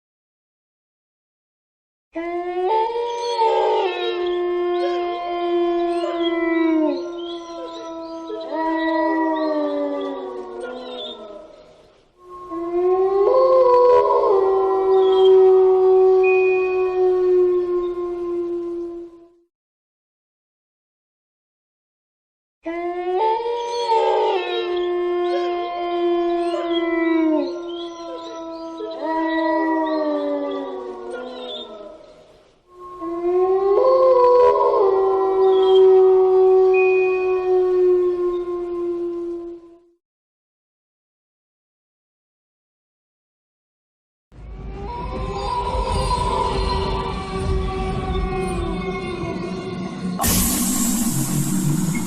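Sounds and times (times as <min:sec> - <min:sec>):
overlapping canine howls: 0:02.2 - 0:19.3, 0:22.7 - 0:32.1, 0:32.8 - 0:39.9
layered howling wails: 0:44.7 - 0:52.0.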